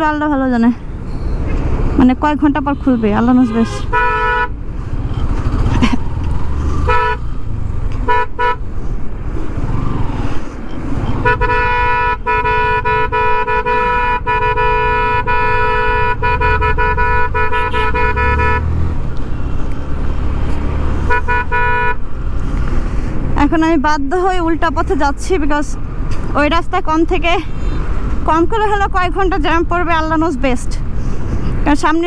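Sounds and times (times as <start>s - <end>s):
traffic engines rumbling: 0.0s - 32.0s
vehicle horn blasts: 2.5s - 4.6s, 6.8s - 7.3s, 8.0s - 8.6s, 11.1s - 18.9s, 21.0s - 22.0s.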